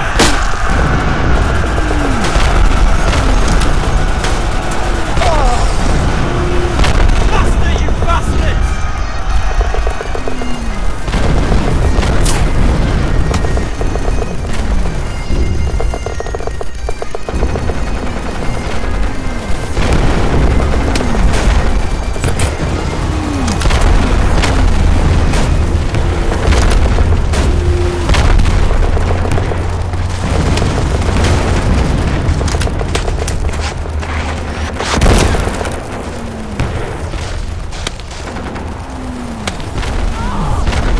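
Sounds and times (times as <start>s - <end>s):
whistles of incoming shells: 0.0s - 5.9s, 8.6s - 23.9s
distant shelling rumble: 0.0s - 40.9s
machine-gun fire: 0.0s - 40.9s
rifle shots: 0.0s - 40.9s.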